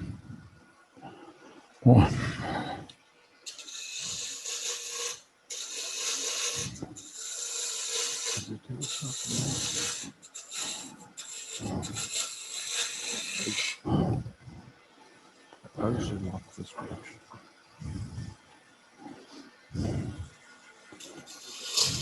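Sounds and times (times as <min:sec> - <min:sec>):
lathe humming: 0:03.5 - 0:13.9, 0:19.2 - 0:22.0
gouge hissing on spinning wood: 0:03.5 - 0:14.4, 0:15.8 - 0:22.0.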